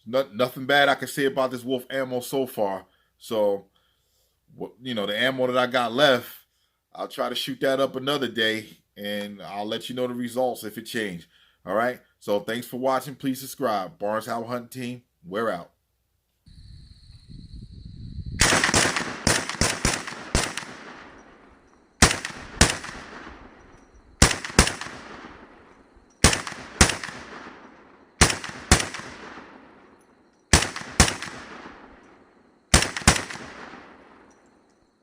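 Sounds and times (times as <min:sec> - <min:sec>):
rifle shots with ringing echo: 0:18.4 - 0:34.7.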